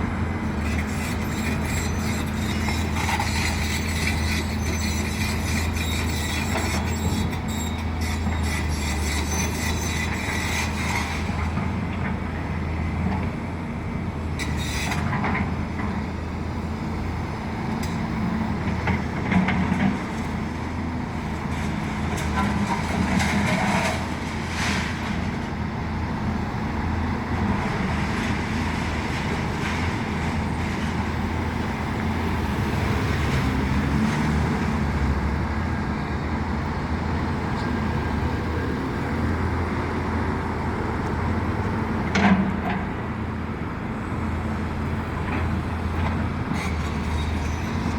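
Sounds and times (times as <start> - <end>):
excavator diesel engine running: 0.0 - 47.9
metallic squeals and clanks: 0.6 - 11.3, 14.4 - 15.1, 46.5 - 47.9.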